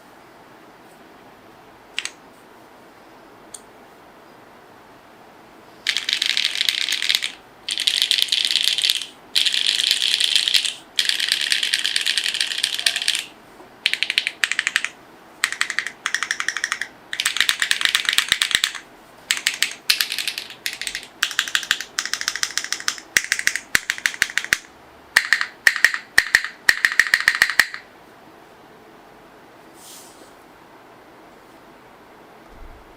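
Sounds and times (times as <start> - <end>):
mechanical keyboard typing: 2.0 - 2.2, 5.8 - 27.9.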